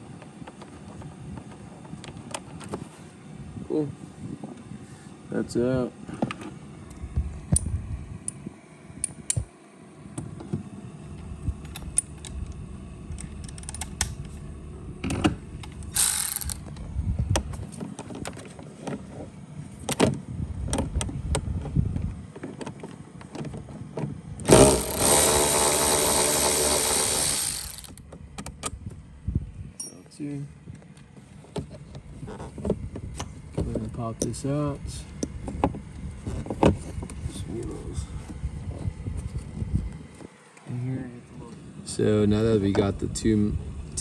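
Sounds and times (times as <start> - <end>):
mechanical whirring: 15.9 - 16.7, 24.5 - 28.0.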